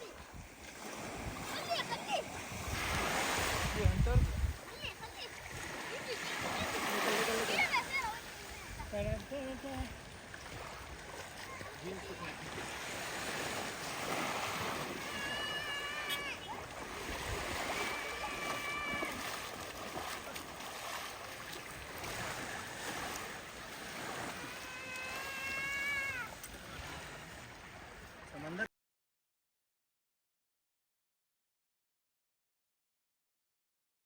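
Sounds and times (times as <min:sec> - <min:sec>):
surf hissing: 0:00.9 - 0:27.6
long animal calls: 0:14.8 - 0:16.5, 0:24.2 - 0:26.4.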